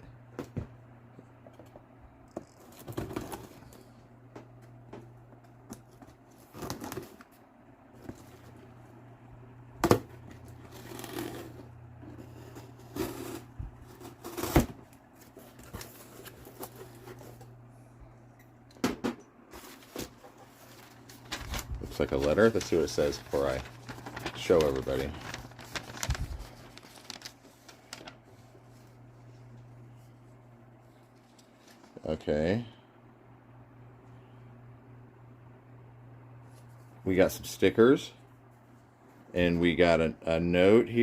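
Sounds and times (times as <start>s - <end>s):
rustling and scraping: 10.3s - 17.5s, 19.5s - 29.4s
low hum: 19.6s - 27.3s.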